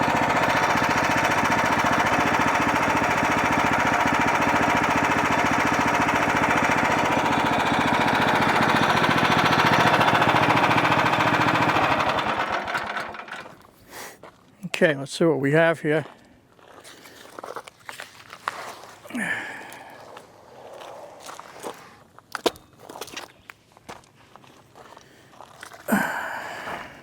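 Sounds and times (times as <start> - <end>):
saw cutting through log: 0.0 - 13.6
sawmill engine running: 0.0 - 13.6.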